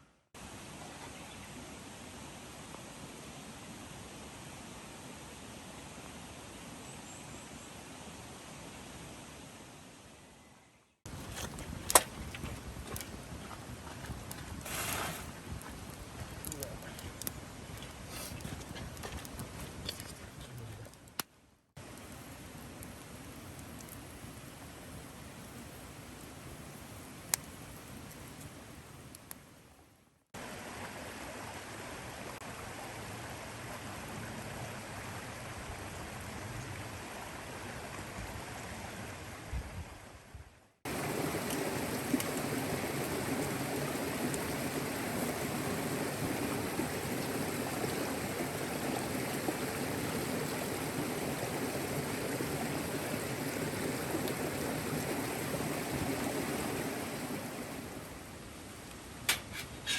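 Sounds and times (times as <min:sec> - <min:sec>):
rushing water: 0:11.1 - 0:21.2, 0:30.4 - 0:39.4, 0:40.8 - 0:59.9.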